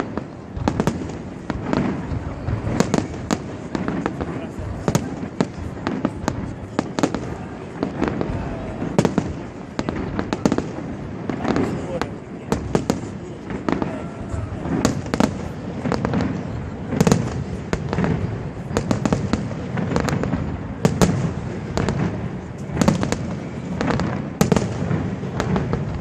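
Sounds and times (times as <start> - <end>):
fireworks sharp bangs: 0.0 - 26.0
low rumble of explosions: 0.0 - 26.0.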